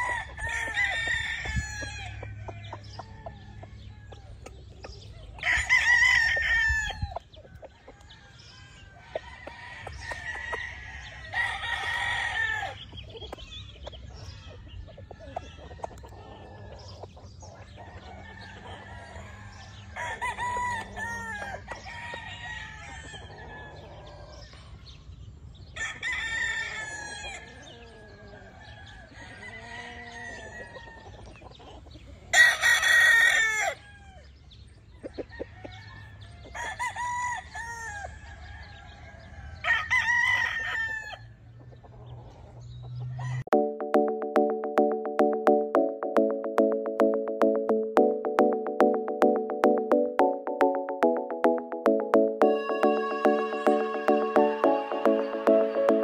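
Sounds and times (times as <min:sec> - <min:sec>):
roosters crowing: 0:00.0 - 0:13.0, 0:14.1 - 0:24.6, 0:25.7 - 0:31.4, 0:32.3 - 0:34.4, 0:35.2 - 0:41.4, 0:42.0 - 0:43.5
chickens clucking: 0:00.0 - 0:25.2, 0:26.6 - 0:39.6, 0:40.6 - 0:56.0.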